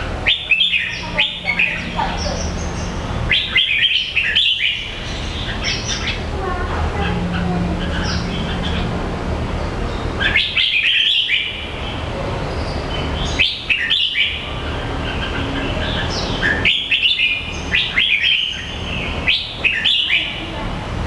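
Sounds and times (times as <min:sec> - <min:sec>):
low background rumble: 0:00.0 - 0:10.9
bird chirping high notes: 0:00.2 - 0:06.3.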